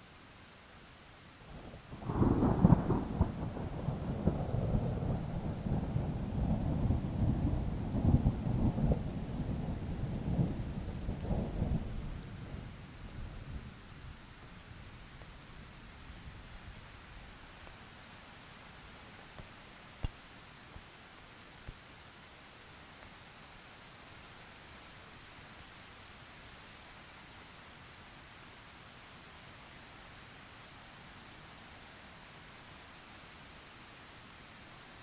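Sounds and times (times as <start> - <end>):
rain hiss: 0.0 - 35.0
thunder rumbling: 2.0 - 13.2.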